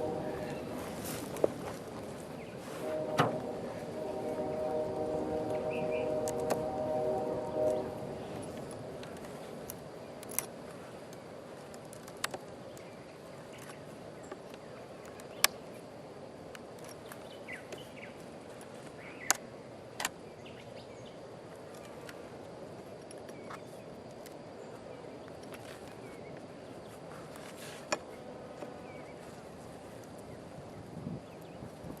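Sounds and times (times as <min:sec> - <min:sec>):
honey bees humming: 0:00.0 - 0:09.6.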